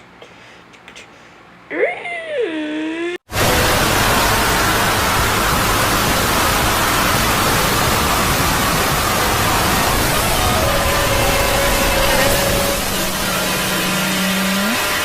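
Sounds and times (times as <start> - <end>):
loud steady hiss: 3.3 - 15.0.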